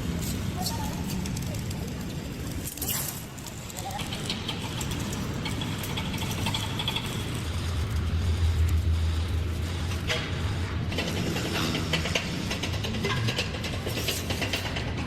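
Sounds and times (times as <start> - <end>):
metallic clicks and rattles: 0.2 - 8.8.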